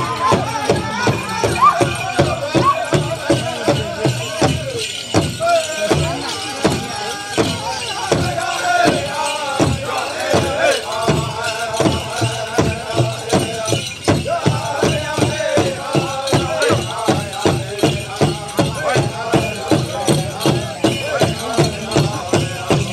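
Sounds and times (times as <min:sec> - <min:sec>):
large drum steady beat: 0:00.0 - 0:22.9
singers chanting in high voices: 0:00.0 - 0:22.9.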